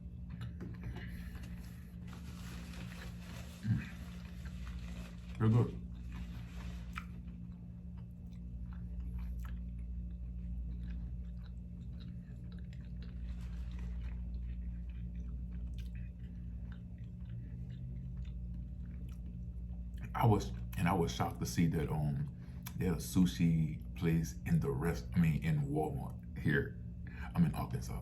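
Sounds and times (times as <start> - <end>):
person chewing crunchy food: 0.0 - 21.8
steady low hum: 0.0 - 28.0.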